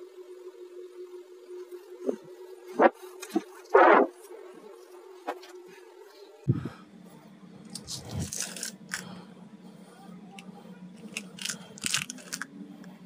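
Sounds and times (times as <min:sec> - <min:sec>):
low hum: 0:06.5 - 0:13.0.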